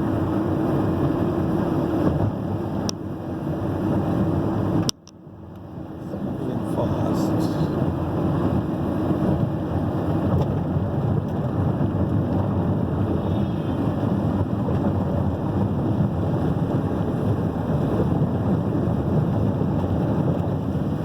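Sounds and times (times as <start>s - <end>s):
wind buffeting microphone: 0.0s - 21.0s
tyre and wind noise: 7.7s - 21.0s.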